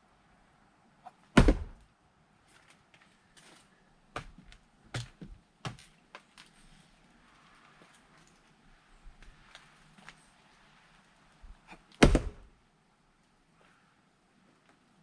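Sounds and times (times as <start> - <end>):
axe striking log: 1.3 - 1.8, 11.9 - 12.5.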